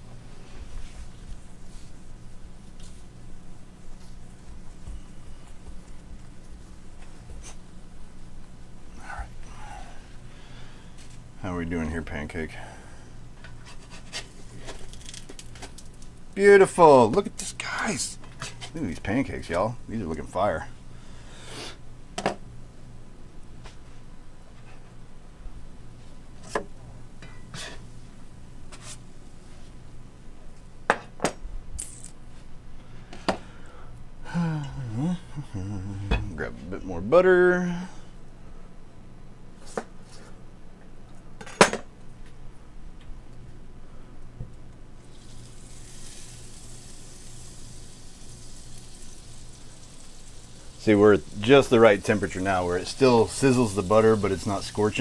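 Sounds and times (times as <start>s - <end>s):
steady low hum: 0.0s - 45.6s
butter sizzling in a frying pan: 45.0s - 55.0s.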